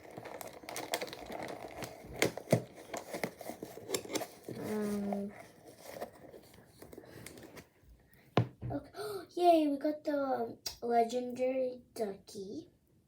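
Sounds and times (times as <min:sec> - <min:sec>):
paper crinkling rustles: 0:00.0 - 0:07.7.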